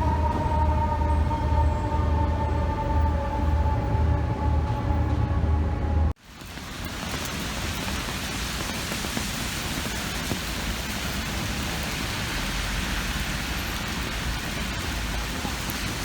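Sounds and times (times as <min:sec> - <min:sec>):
rain hissing: 0:06.2 - 0:16.0.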